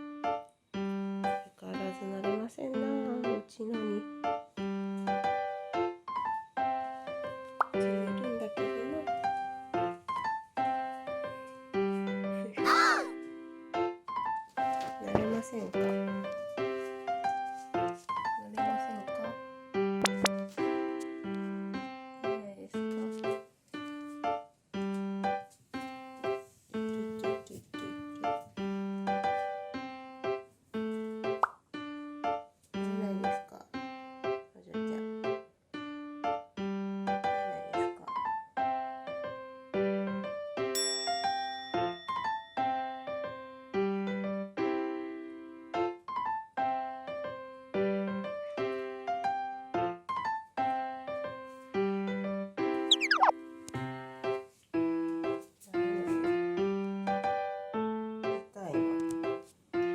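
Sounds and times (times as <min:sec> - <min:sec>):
light piano tune: 0:00.0 - 0:59.9
electric piano tune: 0:52.9 - 0:53.3.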